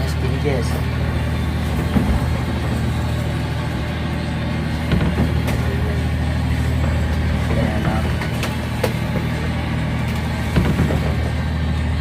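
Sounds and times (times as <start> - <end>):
engine humming steadily: 0.0 - 12.0
handling knocks: 4.8 - 6.0, 10.1 - 11.6.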